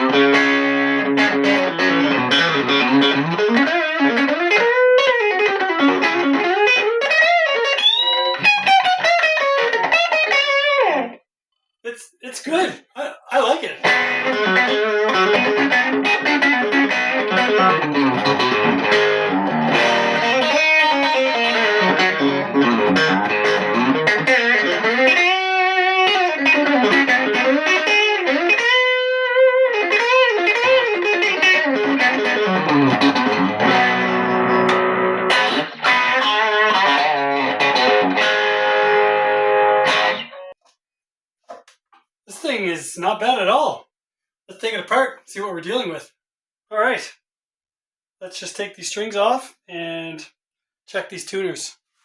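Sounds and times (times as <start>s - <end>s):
electric guitar through amp: 0.0s - 11.2s, 13.8s - 40.5s.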